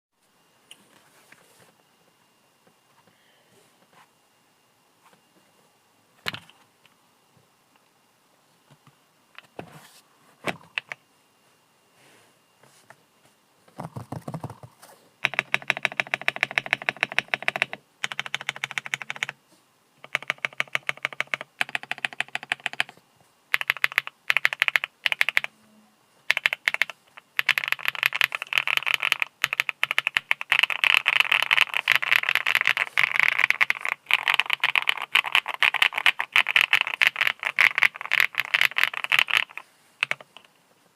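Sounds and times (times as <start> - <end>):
typing on mechanical keyboard: 10.7 - 11.0, 13.8 - 19.4, 20.0 - 25.5, 26.3 - 40.5.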